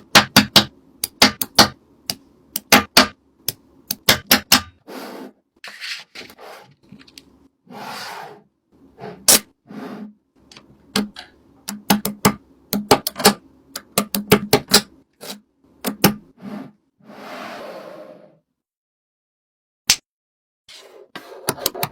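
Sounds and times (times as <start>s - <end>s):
clicks and taps of small objects: 10.5s - 15.0s.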